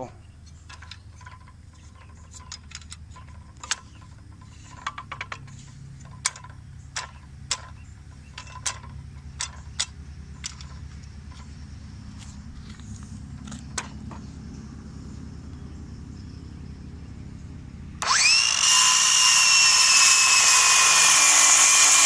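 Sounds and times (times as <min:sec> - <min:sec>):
low steady hum: 0:00.0 - 0:21.4
saw being handled clicks and taps: 0:00.6 - 0:11.5.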